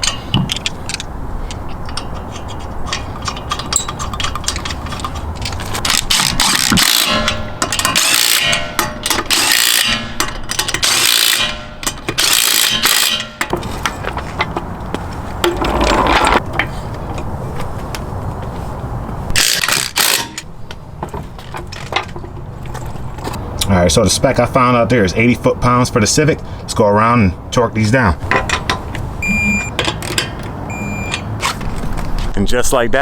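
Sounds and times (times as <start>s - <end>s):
impact wrench bursts: 5.8s - 13.5s.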